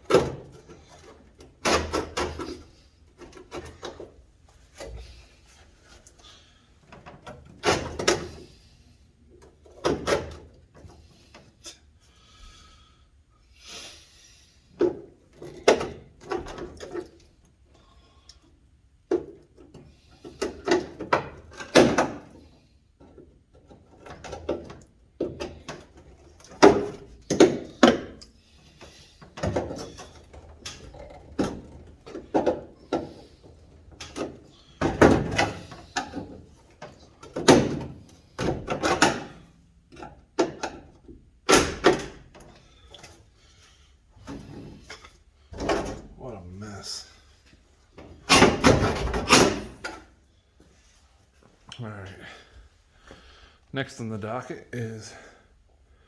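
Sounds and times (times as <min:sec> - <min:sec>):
metal parts clunking and scraping: 0:48.1 - 0:50.1.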